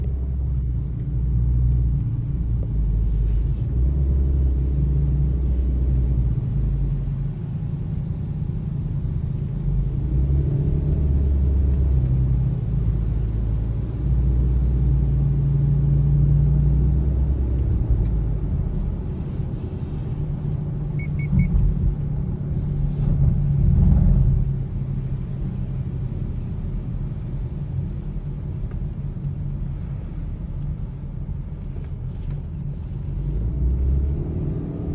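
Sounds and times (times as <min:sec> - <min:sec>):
road rumble inside car: 0:00.0 - 0:34.9
short beeps: 0:21.0 - 0:21.6.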